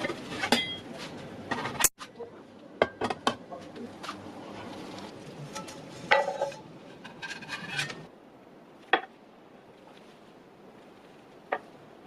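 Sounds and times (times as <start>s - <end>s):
utensils clinking on cookware: 0.0s - 0.9s, 5.5s - 8.1s
utensils scraping cookware: 4.4s - 8.1s.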